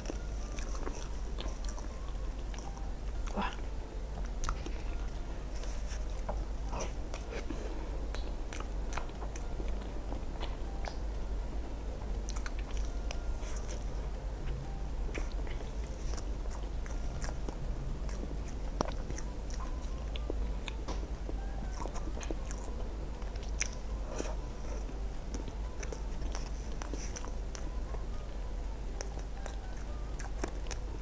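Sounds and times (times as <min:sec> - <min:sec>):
low steady hum: 0:00.0 - 0:31.0
person biting and chewing food: 0:04.2 - 0:11.0.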